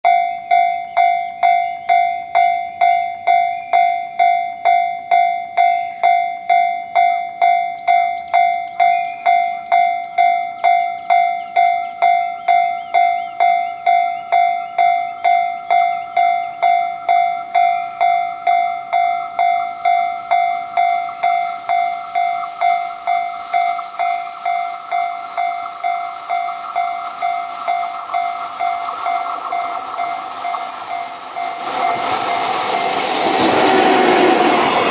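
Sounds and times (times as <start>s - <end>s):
level crossing warning bell: 0.0s - 34.9s
approaching train rushing: 17.0s - 34.9s.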